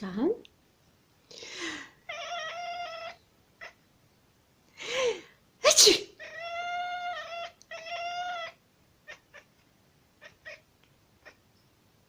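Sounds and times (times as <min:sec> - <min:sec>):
cat meowing: 0:02.0 - 0:03.8, 0:06.0 - 0:09.6, 0:10.2 - 0:11.4
person sneezing: 0:05.6 - 0:06.2.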